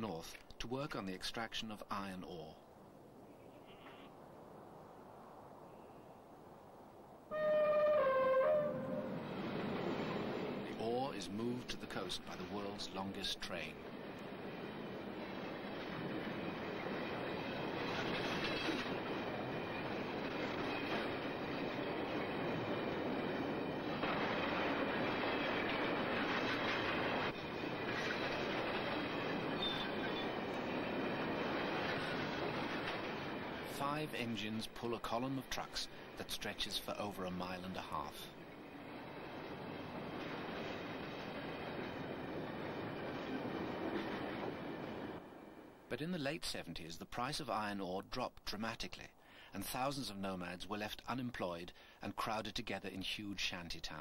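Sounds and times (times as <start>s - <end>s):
freight train rumbling: 7.7s - 46.0s
train wheel squeal: 29.5s - 31.0s.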